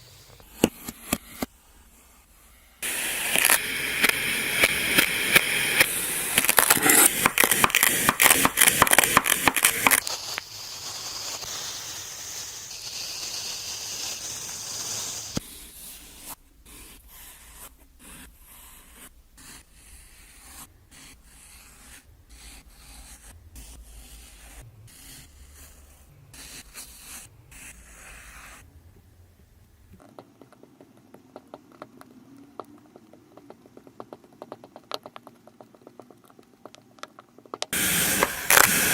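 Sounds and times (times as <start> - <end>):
soft crackles and clicks: 2.8 - 15.4, 29.9 - 38.9
kinetic sand crunching: 37.8 - 38.9.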